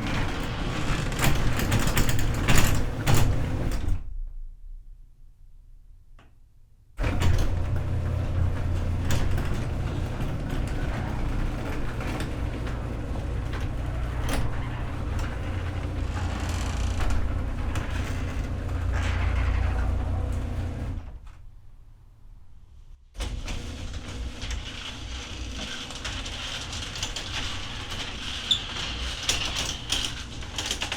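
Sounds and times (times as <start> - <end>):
garage door opener motor hum: 0.0 - 4.0, 7.0 - 21.6, 23.2 - 30.9
garage door clicks and rattles: 0.0 - 4.1, 7.0 - 21.5.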